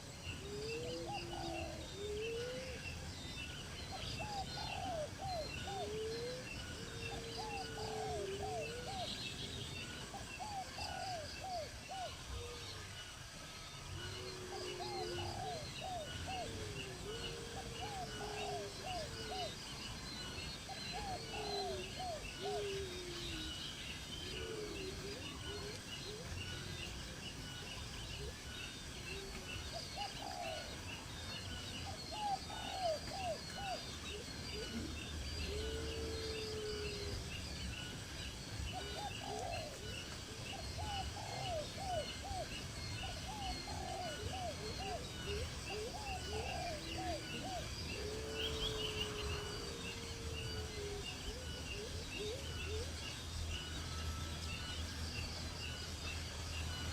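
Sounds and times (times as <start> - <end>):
birds calling low notes: 0.0 - 56.9.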